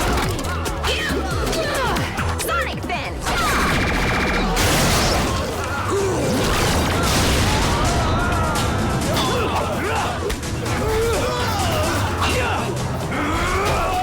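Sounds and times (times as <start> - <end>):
dramatic background score: 0.0 - 14.0
explosion blasts: 3.3 - 12.0
rattling weapon fire: 3.3 - 12.2.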